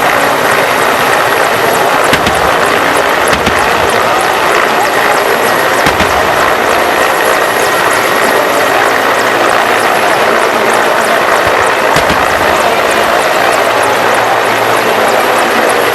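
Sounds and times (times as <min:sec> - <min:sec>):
helicopter engines and rotor: 0:00.0 - 0:15.9.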